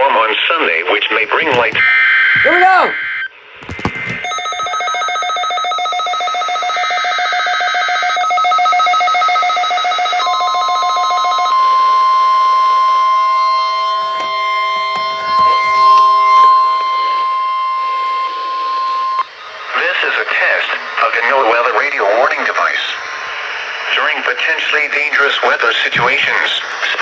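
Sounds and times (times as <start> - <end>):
steady warning alarm tone: 4.2 - 24.6.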